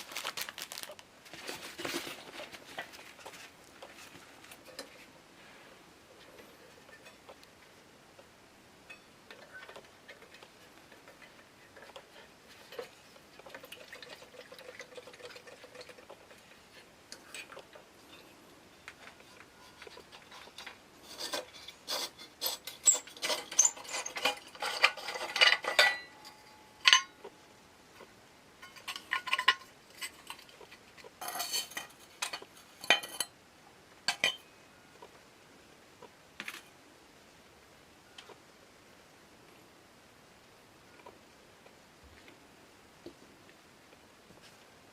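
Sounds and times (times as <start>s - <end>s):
metal lantern parts clinking: 19.1s - 27.2s, 28.6s - 33.3s, 34.1s - 34.5s.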